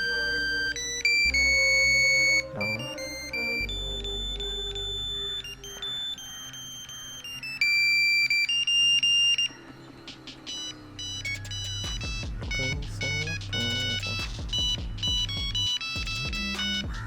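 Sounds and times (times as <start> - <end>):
mobile phone ringtone beeps: 0.0 - 17.0.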